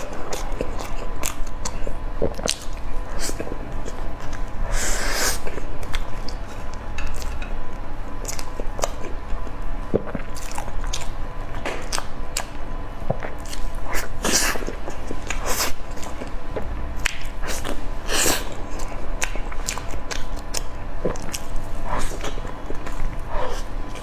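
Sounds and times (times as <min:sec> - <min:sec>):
biting and chewing: 0:00.0 - 0:04.5, 0:10.0 - 0:24.0.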